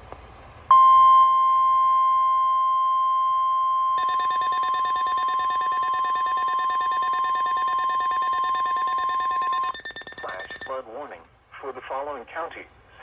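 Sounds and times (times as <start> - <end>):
rapid shrill pulsing beep: 4.0 - 10.7
steady alarm tone: 4.0 - 10.7.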